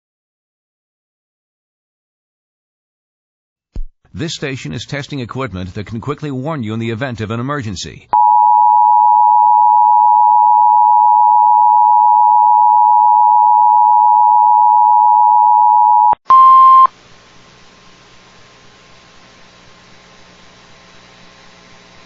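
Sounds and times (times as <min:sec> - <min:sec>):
two-tone attention signal: 0:08.2 - 0:16.9.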